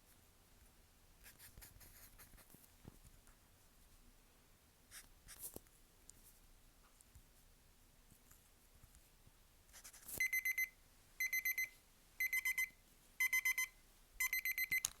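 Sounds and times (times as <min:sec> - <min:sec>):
timer alarm beeping: 0:10.2 - 0:14.9.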